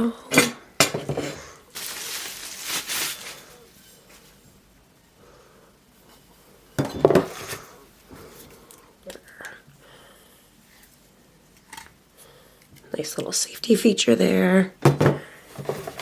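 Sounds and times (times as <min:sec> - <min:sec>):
garden tools rustling: 0:01.0 - 0:04.4.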